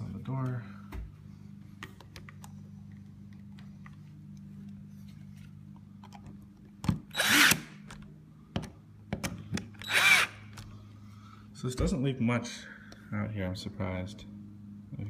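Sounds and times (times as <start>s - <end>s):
steady low hum: 0.0s - 15.0s
power drill burst: 7.1s - 7.8s, 9.8s - 10.4s.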